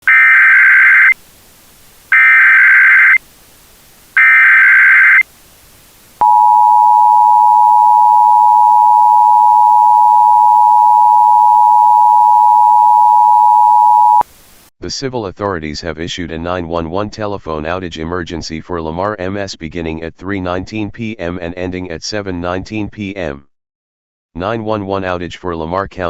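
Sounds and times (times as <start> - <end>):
harsh digital data screech: 0.0 - 1.2, 2.1 - 3.2, 4.2 - 5.2
two-tone attention signal: 0.1 - 1.2, 2.1 - 3.2, 4.2 - 5.2, 6.2 - 14.2.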